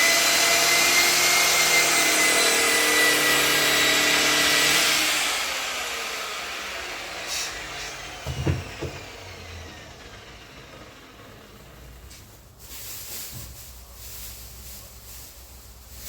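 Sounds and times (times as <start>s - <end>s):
power polisher winding down: 0.0s - 12.2s.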